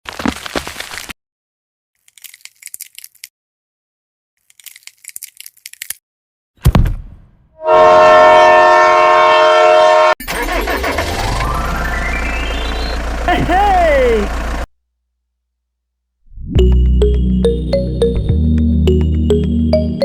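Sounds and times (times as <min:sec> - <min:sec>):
thump: 0:06.6 - 0:07.2
train horn chord: 0:07.6 - 0:10.2.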